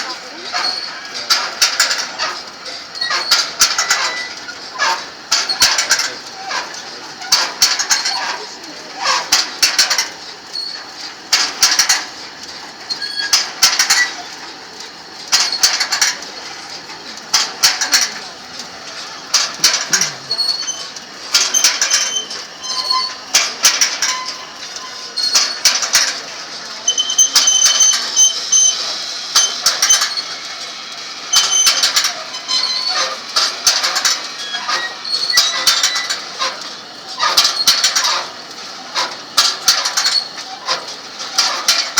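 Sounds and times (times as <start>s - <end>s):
short squeaks: 0.0s - 8.4s, 9.0s - 10.9s, 18.9s - 26.2s, 26.8s - 30.3s, 31.4s - 33.2s, 33.8s - 36.6s
metal parts scraping and clattering: 0.0s - 30.3s, 31.3s - 41.9s
metal clanks and clicks: 0.0s - 41.9s.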